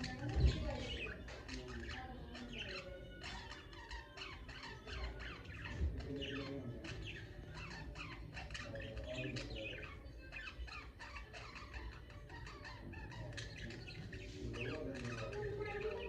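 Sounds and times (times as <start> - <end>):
budgerigars chattering: 0.0 - 16.0.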